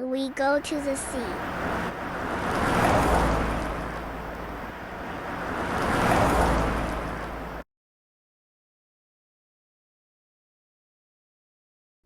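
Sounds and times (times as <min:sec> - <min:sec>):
ocean waves washing in: 0:00.1 - 0:07.6.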